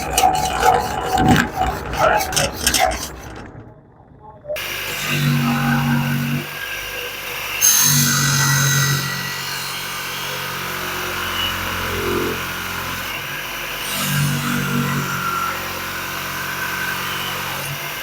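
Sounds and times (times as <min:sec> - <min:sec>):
power tool motor hum: 0:00.0 - 0:03.5.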